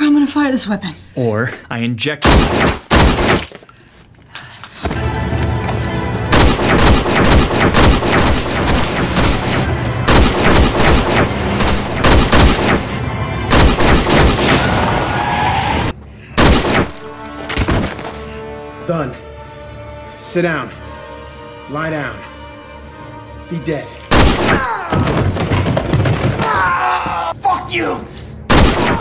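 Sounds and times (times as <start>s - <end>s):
rapid gunfire: 2.2s - 3.4s, 6.3s - 12.8s, 13.5s - 14.5s, 16.4s - 16.9s, 24.1s - 24.6s, 28.5s - 29.0s.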